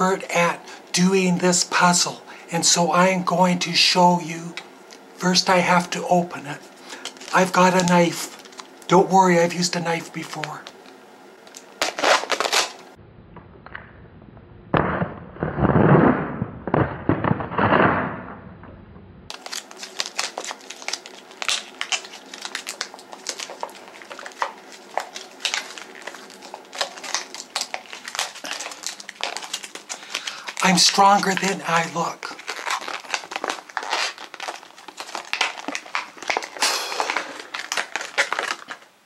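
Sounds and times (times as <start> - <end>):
plastic packaging crinkling: 4.3 - 13.0, 19.3 - 39.0.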